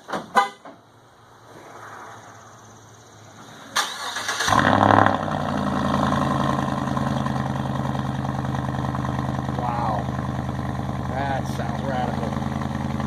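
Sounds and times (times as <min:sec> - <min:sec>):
truck engine starting and idling: 0:02.7 - 0:13.0.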